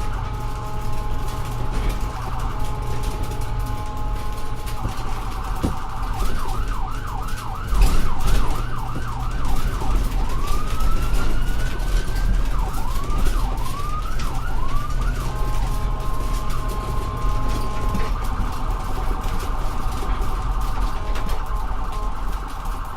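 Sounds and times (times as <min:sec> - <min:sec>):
ambulance siren: 0:00.0 - 0:22.9
vehicle engine rumbling: 0:00.0 - 0:22.9.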